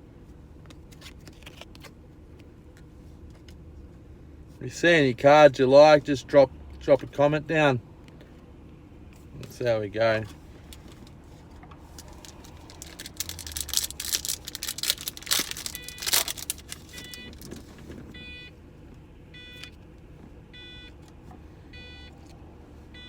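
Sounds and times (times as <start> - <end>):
foil wrapper crinkling and tearing: 11.9 - 17.7
car warning chime beeping: 15.7 - 17.5, 18.1 - 18.6, 19.3 - 19.7, 20.5 - 21.0, 21.7 - 22.2.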